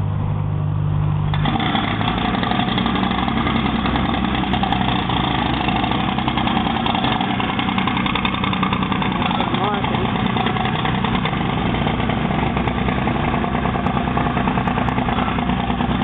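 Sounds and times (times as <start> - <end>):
engine running steadily: 0.0 - 16.0.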